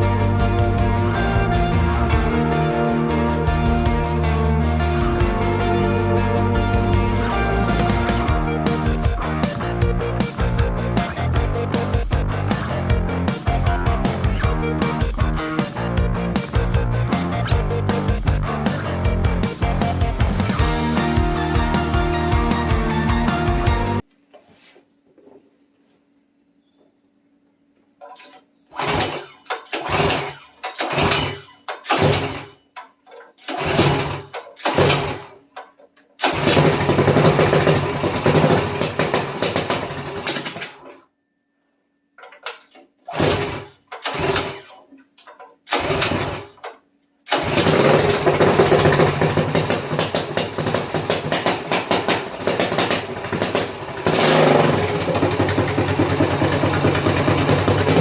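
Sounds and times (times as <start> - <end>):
small engine running: 0.0 - 24.0, 36.2 - 40.5, 47.3 - 58.0
engine pull-start cranking: 28.1 - 35.4, 36.2 - 41.0, 42.2 - 58.0.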